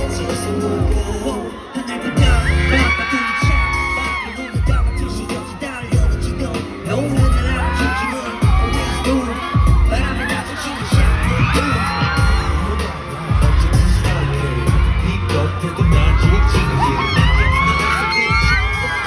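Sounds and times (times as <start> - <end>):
person singing: 0.0 - 19.0
pop song over sound system: 0.0 - 19.0
heavy bass drum hits: 7.2 - 7.8, 10.9 - 18.8.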